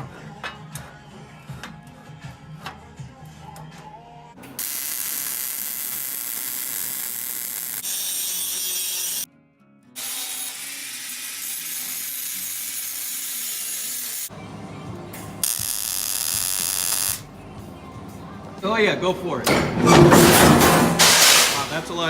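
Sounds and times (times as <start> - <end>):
power tool cutting steel: 4.5 - 9.3, 10.0 - 14.3, 15.4 - 17.2.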